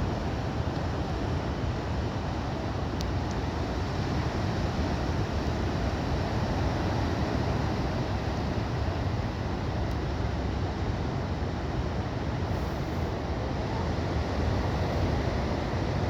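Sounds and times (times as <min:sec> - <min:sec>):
sea roar: 0:03.6 - 0:16.0.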